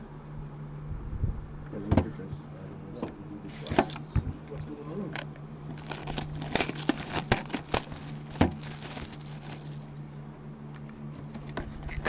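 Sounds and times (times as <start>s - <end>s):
low steady hum: 0.0s - 12.0s
packaging wrap crinkling: 5.2s - 10.0s.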